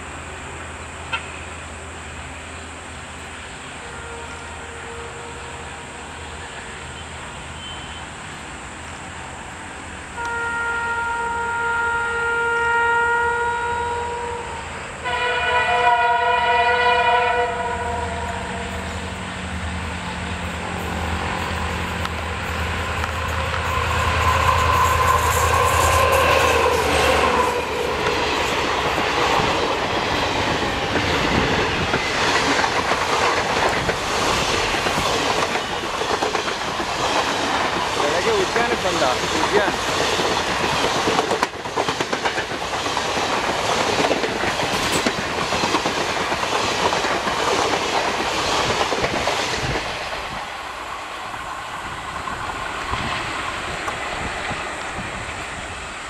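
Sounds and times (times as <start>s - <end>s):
locomotive twin-tone horn: 3.7s - 8.2s, 10.1s - 28.6s
locomotive engine rumbling: 16.9s - 56.0s
train wheels clickety-clack: 20.4s - 50.6s.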